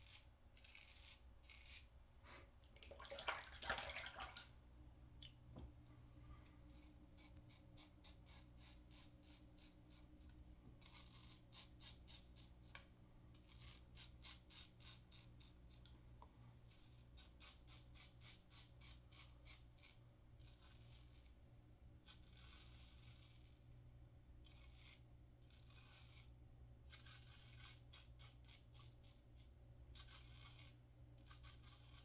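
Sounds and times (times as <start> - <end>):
razor scraping through stubble: 0.0 - 1.9, 10.8 - 12.5.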